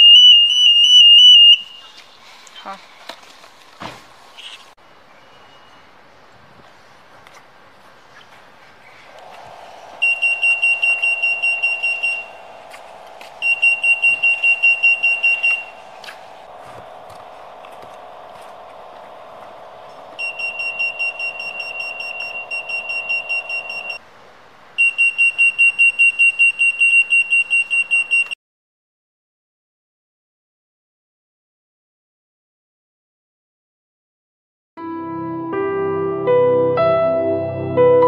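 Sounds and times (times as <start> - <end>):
steady low hum: 5.9 - 24.0
security gate alarm beeping: 10.0 - 12.6, 13.4 - 15.9, 20.2 - 24.0, 24.8 - 28.4.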